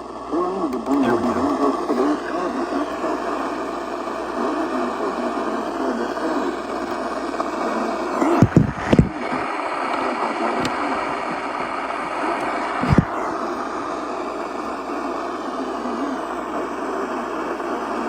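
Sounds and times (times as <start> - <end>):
radio static hiss: 0.0 - 18.0
loud thumps: 8.4 - 9.1.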